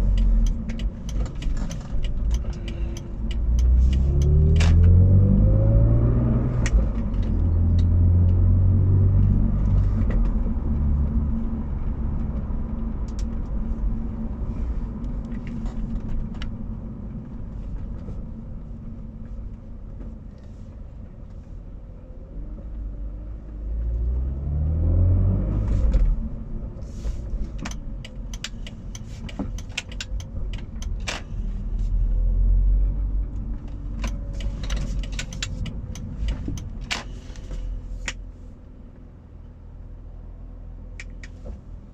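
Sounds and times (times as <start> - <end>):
steady low rear-end hum: 0.0 - 24.0, 25.5 - 41.9
car accelerating at low speed: 0.0 - 41.9.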